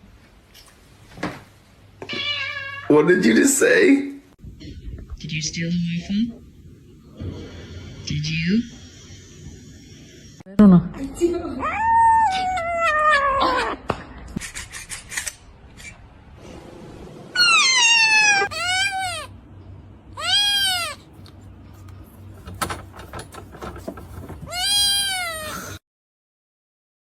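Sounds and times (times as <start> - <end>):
cat meowing: 2.1 - 2.9, 11.6 - 13.8, 17.4 - 19.3, 20.2 - 21.0, 24.5 - 25.8.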